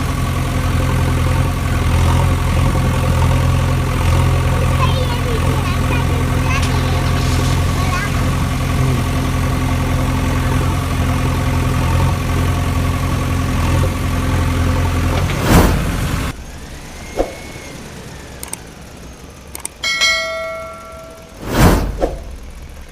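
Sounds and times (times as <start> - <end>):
engine idling: 0.0 - 22.9
short ringing chime: 19.8 - 21.7.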